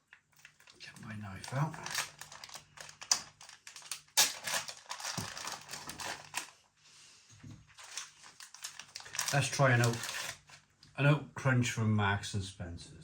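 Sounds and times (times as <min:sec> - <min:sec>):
plastic wrapper crackling: 0:00.2 - 0:06.6, 0:07.7 - 0:10.6
knife slitting plastic packet: 0:00.4 - 0:06.5, 0:07.8 - 0:10.6.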